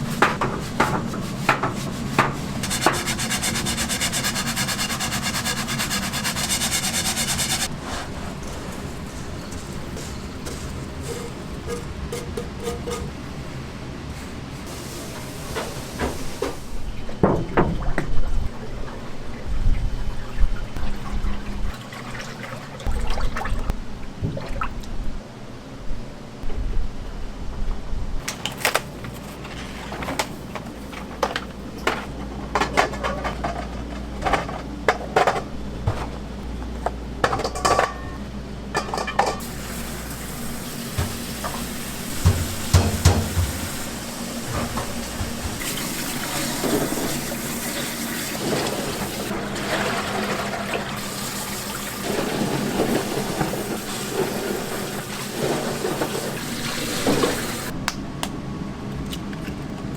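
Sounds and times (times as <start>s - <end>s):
dishes and utensils clinking: 6.9s - 13.2s, 37.2s - 39.6s.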